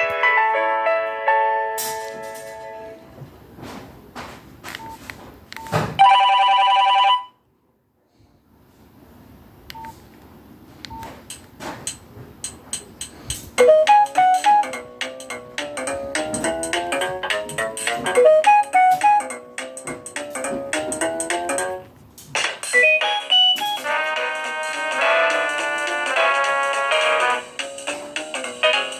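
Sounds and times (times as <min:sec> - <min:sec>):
percussive phone ringtone: 0:06.0 - 0:07.4, 0:22.6 - 0:24.0
ringtone melody: 0:06.0 - 0:07.4, 0:13.6 - 0:21.8, 0:22.4 - 0:28.9
two-tone alert beep: 0:22.7 - 0:23.9.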